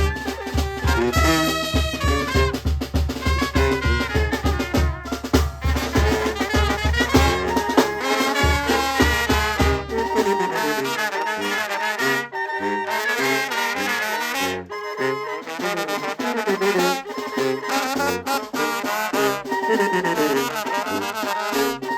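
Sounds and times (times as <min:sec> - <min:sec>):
bass drum thumping: 0:00.0 - 0:10.0
brass band playing: 0:00.0 - 0:21.9.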